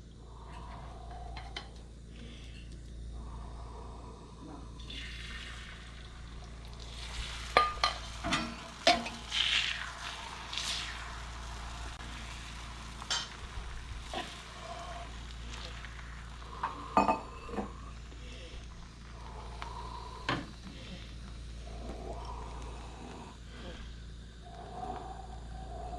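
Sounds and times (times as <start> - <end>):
sizzling on hot griddle: 4.8 - 23.2
kitchen utensils clinking: 7.6 - 9.2.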